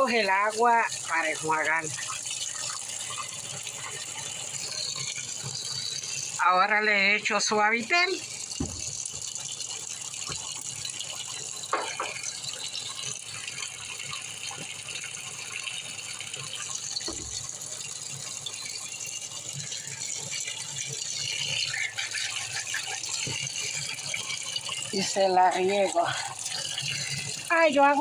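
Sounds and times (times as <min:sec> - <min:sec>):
washing machine rattling: 0:07.9 - 0:09.4, 0:11.6 - 0:12.7, 0:16.6 - 0:17.9, 0:20.3 - 0:28.0.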